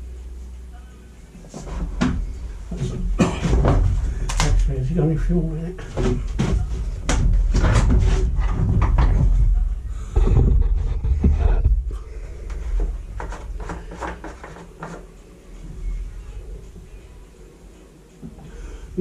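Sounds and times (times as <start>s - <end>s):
heavy low handling bumps: 5.9s - 12.1s.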